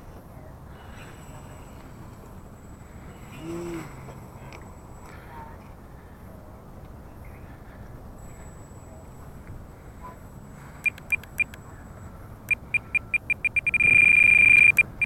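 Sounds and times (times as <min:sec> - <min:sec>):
high-pitched electronic beeps: 0:12.5 - 0:15.0.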